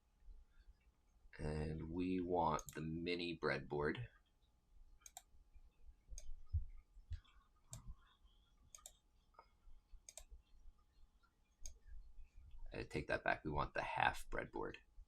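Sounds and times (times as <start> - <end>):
faint computer mouse clicks: 5.0 - 5.3, 8.7 - 10.3.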